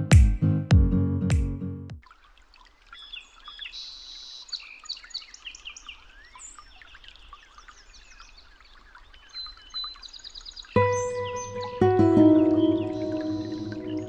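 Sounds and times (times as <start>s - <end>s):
birds chirping: 3.0s - 14.0s
high bird trill: 10.8s - 14.0s.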